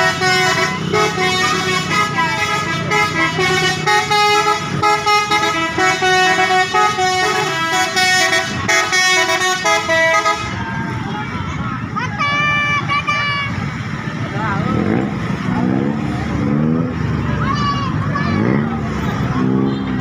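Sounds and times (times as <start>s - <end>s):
musical bus horns playing tune: 0.0s - 11.0s.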